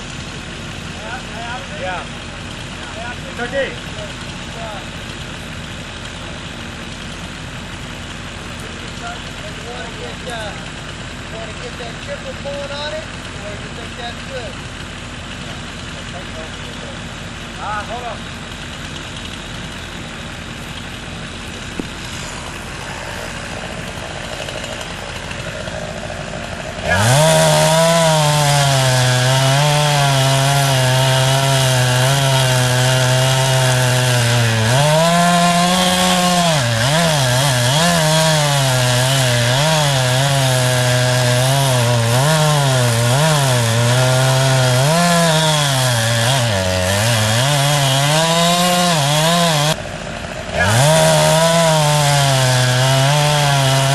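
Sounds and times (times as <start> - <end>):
engine running steadily: 0.0 - 38.2, 49.6 - 50.7
chainsaw revving and cutting wood: 0.0 - 53.9.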